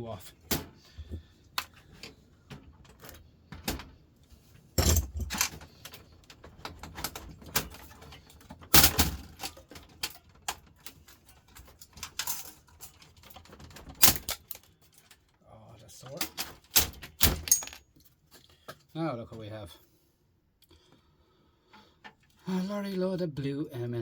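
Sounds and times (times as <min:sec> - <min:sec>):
plastic and metal parts clattering: 0:00.4 - 0:18.9.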